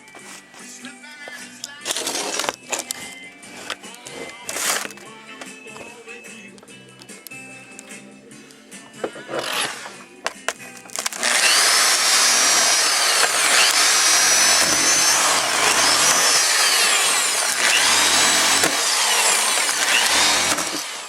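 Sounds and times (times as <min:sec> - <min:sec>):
hammer drill grinding: 0:01.4 - 0:05.2, 0:09.0 - 0:21.0.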